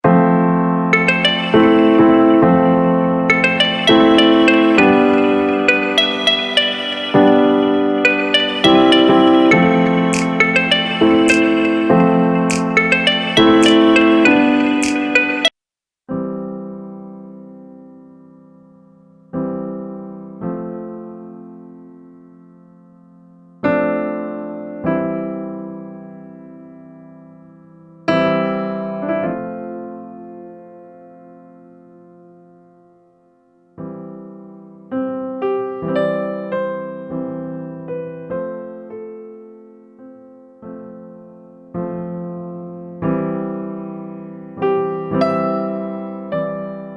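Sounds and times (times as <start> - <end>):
slow keyboard chords: 0.0 - 15.5
soft piano music: 0.0 - 15.5, 16.1 - 46.9.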